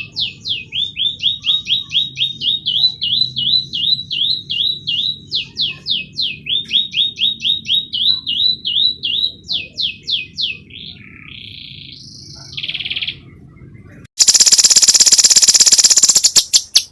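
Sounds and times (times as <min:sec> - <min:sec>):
canary singing: 0:00.0 - 0:13.4, 0:14.2 - 0:16.9.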